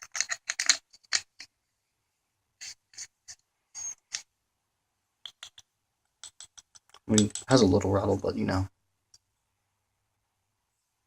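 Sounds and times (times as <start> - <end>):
batteries rattling in flashlight: 0.0 - 1.5.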